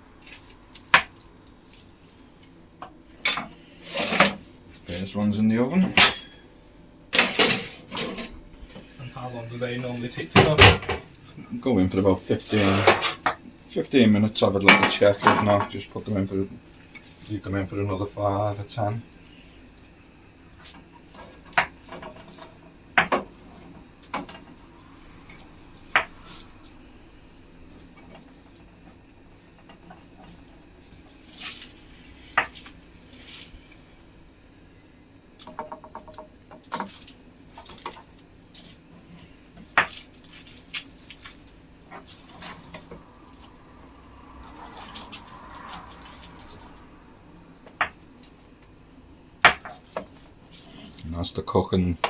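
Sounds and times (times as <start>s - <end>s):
utensils and dishes clinking: 5.8s - 6.3s, 7.2s - 8.3s, 12.4s - 13.4s.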